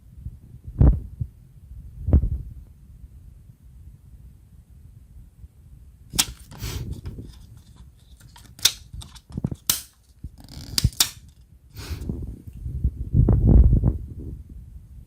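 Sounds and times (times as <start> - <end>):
plastic clicks and snaps: 6.2 - 11.4
scraping and rustling: 6.2 - 11.4.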